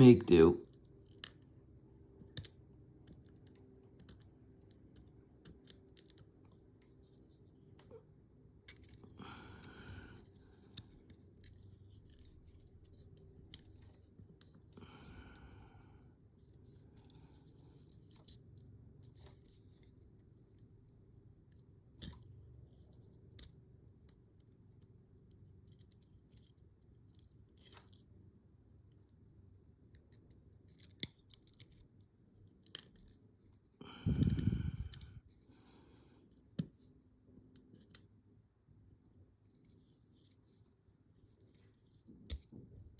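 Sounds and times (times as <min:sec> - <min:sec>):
padlock being taken apart: 0:30.0 - 0:31.9.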